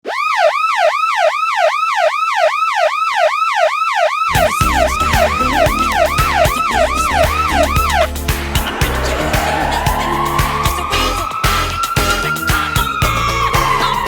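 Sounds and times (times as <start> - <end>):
electronic siren whooping: 0.0 - 14.0
music with drum beat and bass: 4.3 - 14.0.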